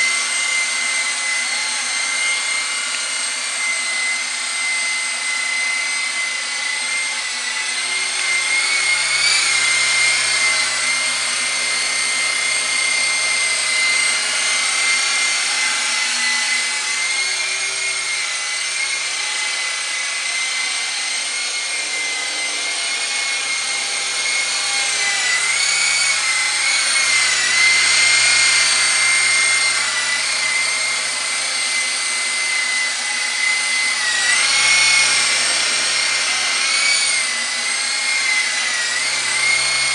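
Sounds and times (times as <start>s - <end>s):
toy helicopter motor whine: 0.0s - 39.9s.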